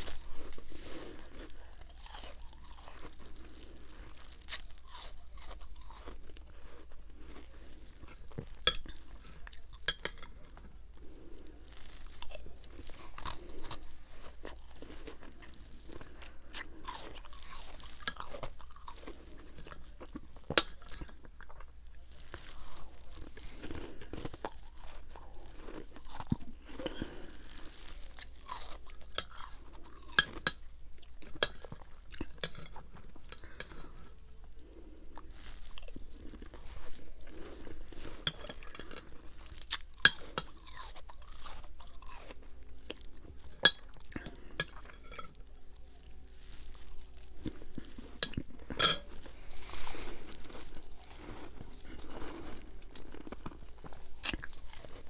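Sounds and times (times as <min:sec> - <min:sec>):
crunching ice between teeth: 0:00.0 - 0:10.7.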